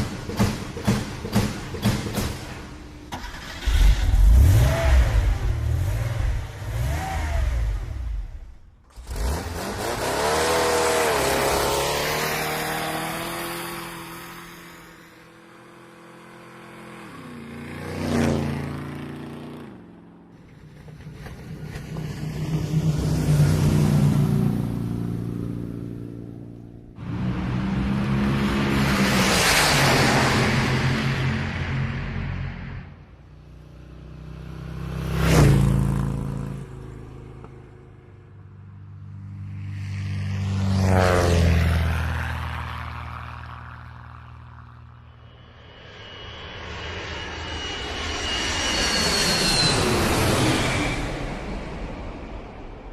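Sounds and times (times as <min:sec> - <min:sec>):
car engine revving: 0:03.1 - 0:15.0.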